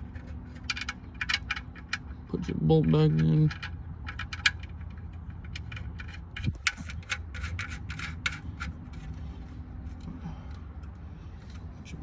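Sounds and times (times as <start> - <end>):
light metal clicks and scrapes: 0.0 - 12.0.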